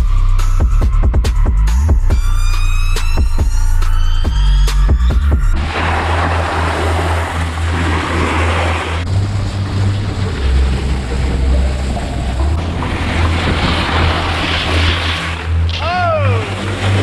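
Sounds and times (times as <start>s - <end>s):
snowboard scraping over snow: 5.6s - 17.0s.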